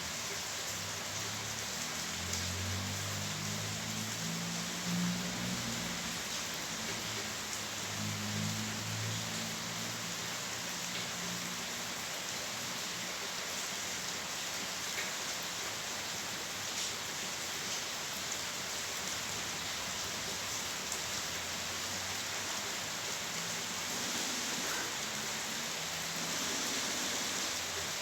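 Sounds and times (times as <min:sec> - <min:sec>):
steady rain falling: 0:00.0 - 0:28.0.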